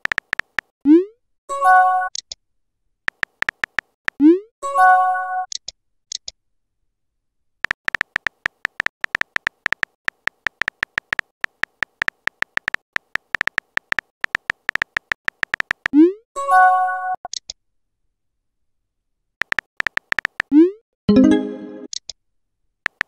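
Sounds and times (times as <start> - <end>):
phone keyboard typing clicks: 0.0 - 0.7, 3.1 - 4.2, 7.6 - 16.0, 19.4 - 20.5
message alert swoop and chime: 21.1 - 21.9.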